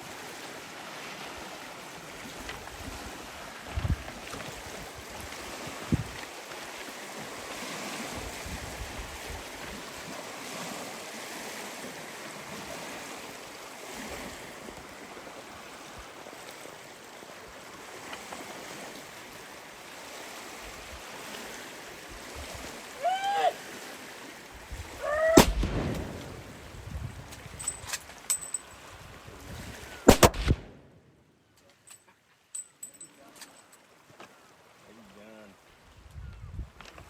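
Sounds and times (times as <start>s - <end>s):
surf washing on rocky shore: 0.0s - 30.9s
low thumps: 25.4s - 26.9s.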